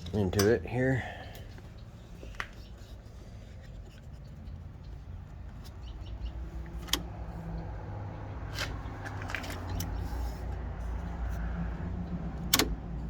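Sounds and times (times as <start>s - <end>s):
sharp clicks: 12.4s - 12.8s.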